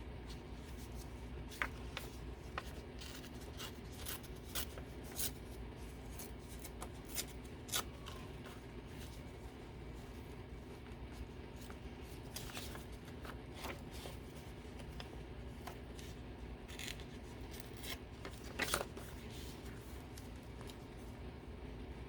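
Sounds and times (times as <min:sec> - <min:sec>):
paper being handled: 0:00.3 - 0:21.2
scissors snipping paper: 0:01.5 - 0:08.6, 0:14.8 - 0:20.8.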